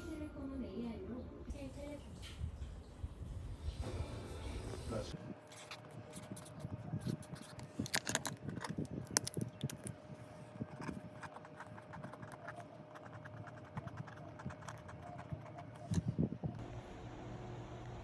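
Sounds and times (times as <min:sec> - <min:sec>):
faint steady hum: 0:05.2 - 0:18.0
rapid irregular clicking and tapping: 0:05.4 - 0:16.6.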